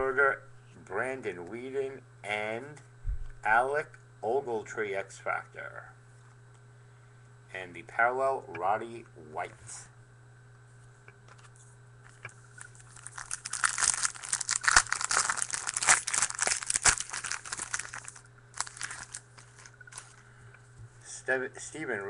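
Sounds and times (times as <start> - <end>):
foil pack tearing and crinkling: 12.6 - 20.2.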